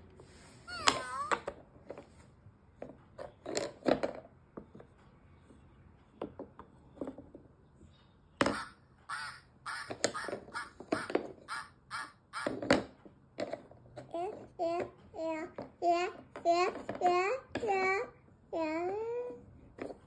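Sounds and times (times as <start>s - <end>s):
recorded animal calls from toy speaker: 0.7s - 1.5s, 8.4s - 13.0s
wooden pieces knocking: 8.4s - 14.9s.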